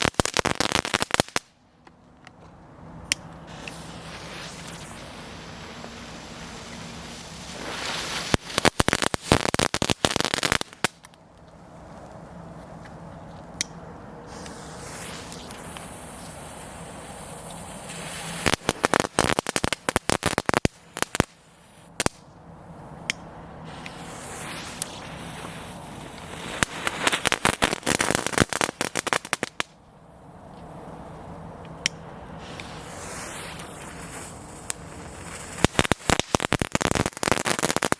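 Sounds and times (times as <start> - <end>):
firework hiss: 0.0 - 1.6, 3.3 - 11.1, 14.2 - 22.2, 23.6 - 29.8, 32.1 - 37.9
firework crackling: 0.0 - 1.7, 3.3 - 11.2, 13.9 - 22.2, 23.6 - 29.8, 30.7 - 37.9
single firework pops: 32.5 - 37.9.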